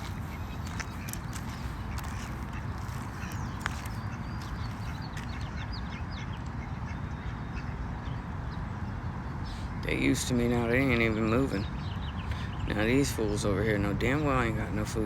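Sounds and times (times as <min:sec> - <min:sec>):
ducks quacking: 0:00.0 - 0:07.8
steady low rumble: 0:00.0 - 0:15.0.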